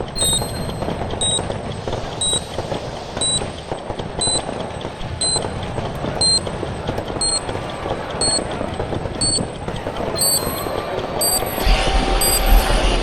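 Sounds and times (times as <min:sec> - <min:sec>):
rising electronic beeps: 0:00.0 - 0:01.5, 0:02.2 - 0:02.5, 0:03.2 - 0:03.4, 0:04.2 - 0:04.4, 0:05.2 - 0:05.5, 0:06.2 - 0:06.5, 0:07.2 - 0:07.4, 0:08.2 - 0:08.5, 0:09.2 - 0:09.4, 0:10.2 - 0:12.8
dense noisy background: 0:00.0 - 0:13.0.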